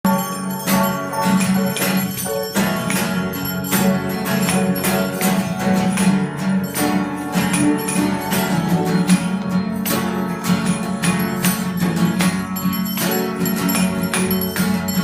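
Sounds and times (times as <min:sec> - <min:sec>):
small church bells ringing: 0:00.0 - 0:15.0
hum of large bells: 0:00.1 - 0:05.9.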